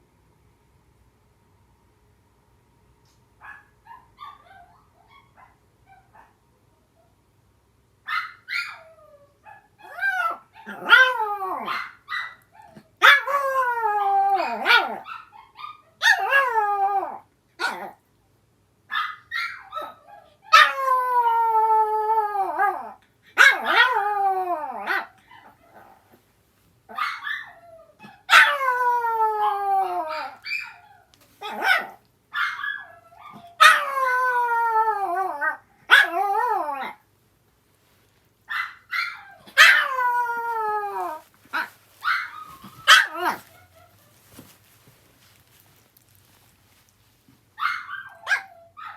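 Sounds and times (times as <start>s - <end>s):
dog yips and barks: 3.4s - 6.4s, 8.0s - 16.6s, 18.9s - 21.3s, 22.6s - 24.0s, 24.7s - 26.0s, 26.9s - 34.3s, 35.0s - 37.0s, 38.5s - 45.6s, 47.6s - 48.9s
small dogs howling: 8.1s - 18.0s, 19.3s - 26.1s, 26.9s - 37.0s, 38.5s - 46.8s, 47.6s - 48.9s.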